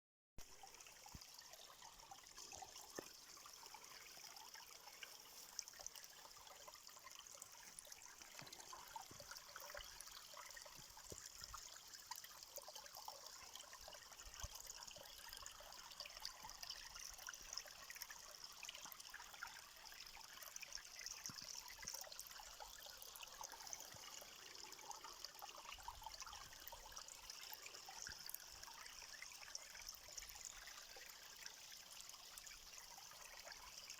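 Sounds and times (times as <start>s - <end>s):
trickling water: 0.4s - 33.9s.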